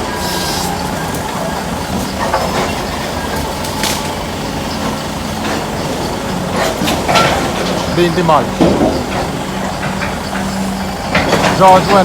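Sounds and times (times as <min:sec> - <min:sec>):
diesel engine running: 0:00.0 - 0:12.0
wood breaking with cracks: 0:00.7 - 0:04.4.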